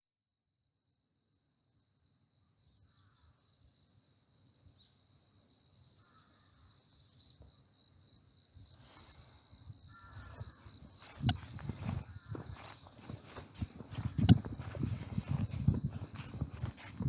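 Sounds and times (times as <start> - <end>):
outdoor ambience: 1.4 - 17.0
high-pitched insect trill: 2.3 - 17.0
soft chirps: 8.7 - 17.0.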